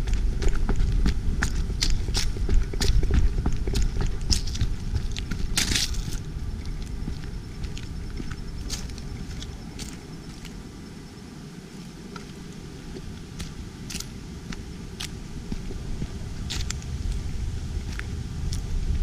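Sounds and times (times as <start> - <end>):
sharp clicks and crackles: 0.0 - 10.6
outdoor ambient rumble: 0.0 - 19.0.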